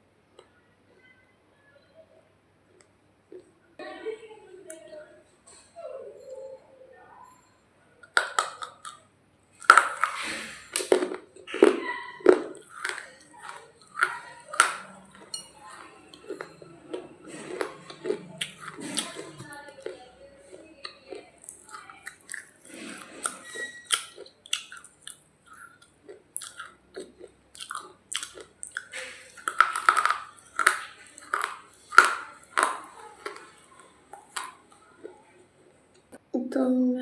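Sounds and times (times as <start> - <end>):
person chewing crunchy clay: 9.6 - 35.2.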